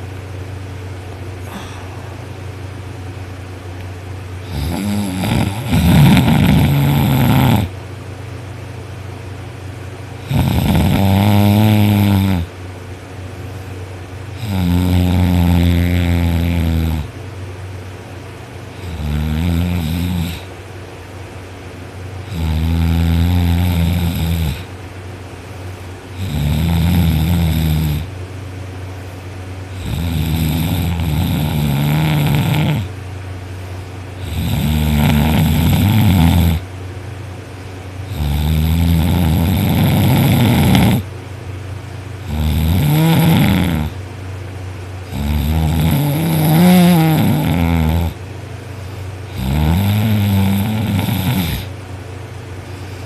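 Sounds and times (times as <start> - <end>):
person snoring loudly: 1.4 - 2.3, 4.4 - 7.7, 10.2 - 12.5, 14.4 - 17.1, 18.8 - 20.5, 22.3 - 24.7, 26.2 - 28.1, 29.8 - 32.9, 34.2 - 36.6, 38.1 - 41.1, 42.2 - 44.0, 45.1 - 48.2, 49.3 - 51.7.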